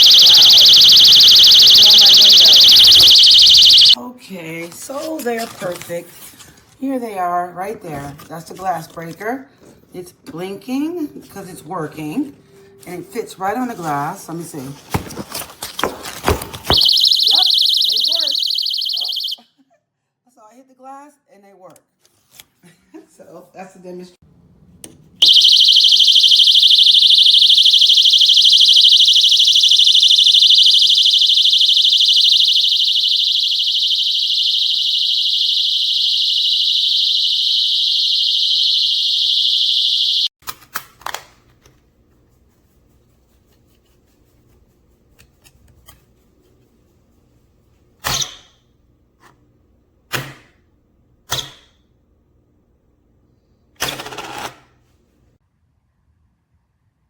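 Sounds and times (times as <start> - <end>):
window alarm siren shrieking: 0.0 - 4.0, 16.7 - 19.4, 25.2 - 40.3.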